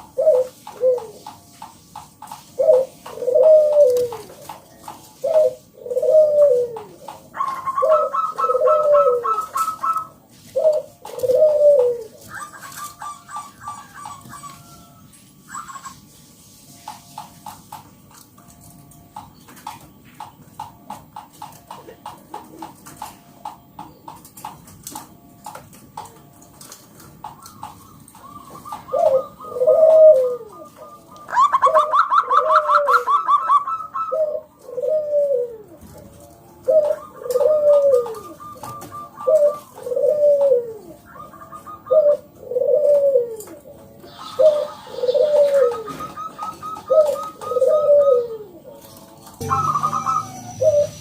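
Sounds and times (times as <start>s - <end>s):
dove cooing: 0.0s - 1.5s, 2.4s - 16.2s, 24.1s - 51.0s
quick high bird notes: 49.4s - 51.0s.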